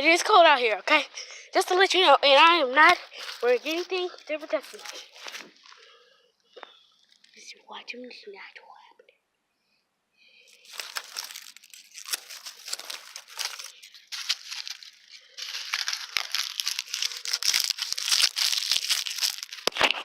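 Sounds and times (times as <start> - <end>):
dry leaves crunching: 3.1 - 5.5, 10.5 - 20.0.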